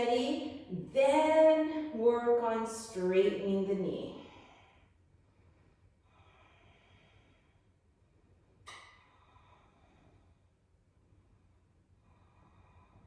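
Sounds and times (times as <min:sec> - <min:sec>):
faint human breathing: 0:04.2 - 0:13.0.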